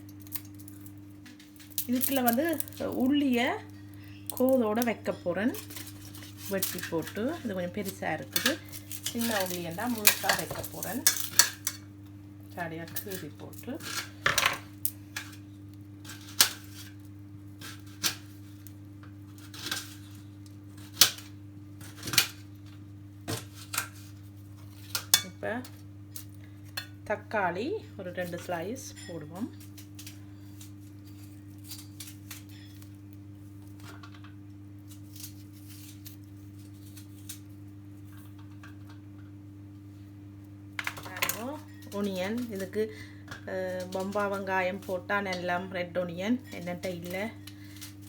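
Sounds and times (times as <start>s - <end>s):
low electrical hum: 0.0s - 48.0s
kitchen utensils clicking: 4.3s - 11.8s.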